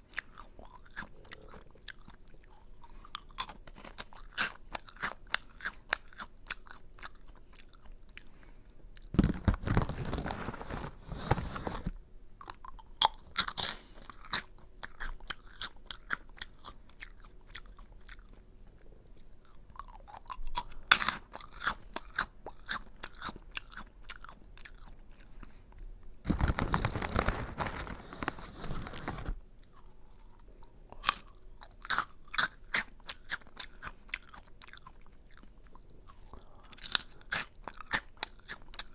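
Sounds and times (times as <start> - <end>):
crunching and chewing snack: 0.0 - 38.9.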